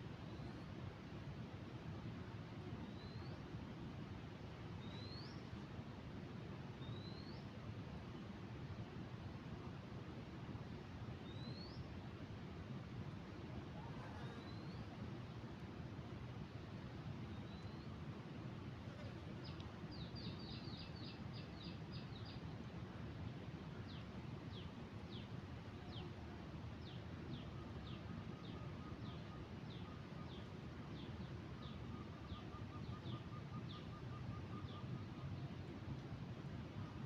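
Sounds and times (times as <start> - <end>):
low outdoor background noise: 0.0 - 37.0.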